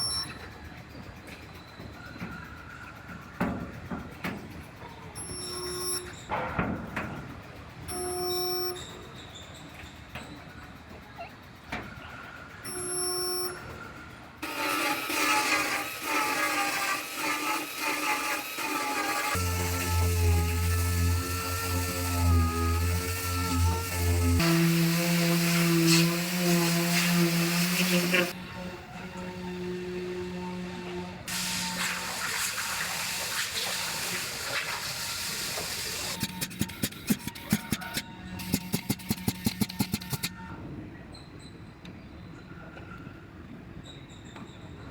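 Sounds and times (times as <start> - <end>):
power tool whining: 14.4 - 40.4.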